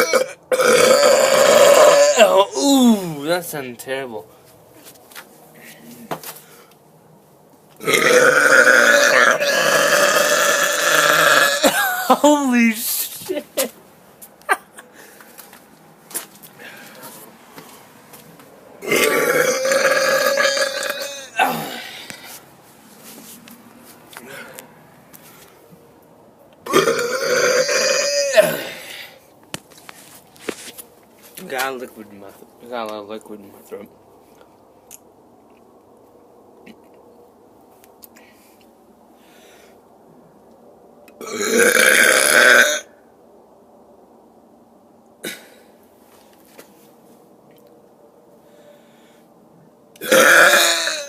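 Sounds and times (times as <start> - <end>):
man burping: 0.0 - 3.2, 7.8 - 12.5, 18.8 - 22.1, 26.6 - 29.0, 41.2 - 42.9, 45.2 - 45.6, 50.0 - 51.0.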